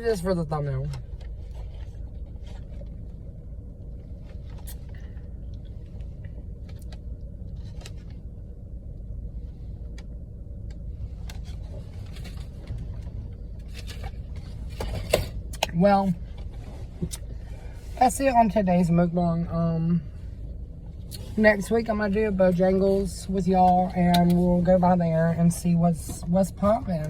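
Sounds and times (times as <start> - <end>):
car engine idling: 0.0 - 27.0.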